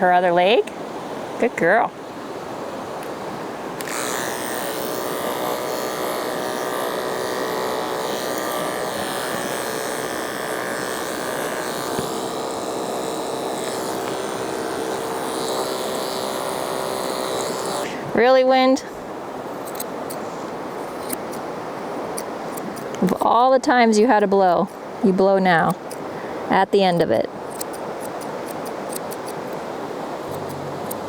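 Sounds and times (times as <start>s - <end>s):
electric clippers buzzing: 3.7s - 18.1s, 20.8s - 21.5s, 25.5s - 26.1s, 26.9s - 31.0s.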